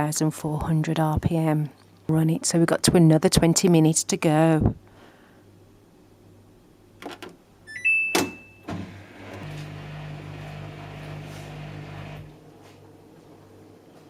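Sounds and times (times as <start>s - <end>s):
washing machine running: 8.7s - 12.5s.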